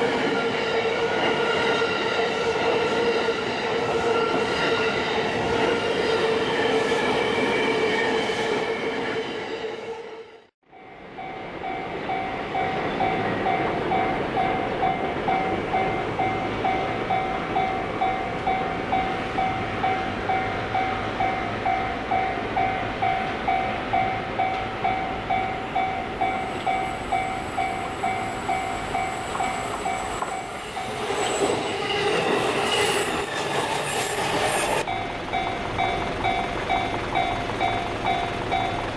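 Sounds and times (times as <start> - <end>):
electric train running past: 0.0 - 38.9
level-crossing warning bell: 10.6 - 38.9.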